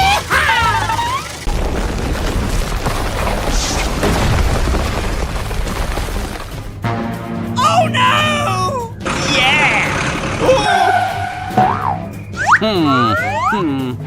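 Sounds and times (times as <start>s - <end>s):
high cartoon vocal squeal: 12.4s - 13.6s.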